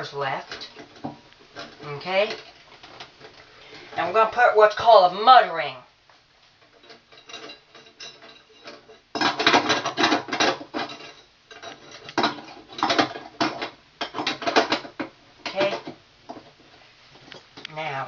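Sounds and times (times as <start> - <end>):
metal clattering and scraping: 6.6 - 17.4.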